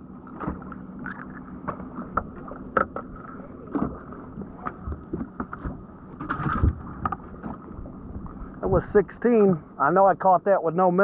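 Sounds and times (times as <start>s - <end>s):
steady low hum: 0.0s - 11.0s
knocks and clatter on boat: 1.6s - 8.6s.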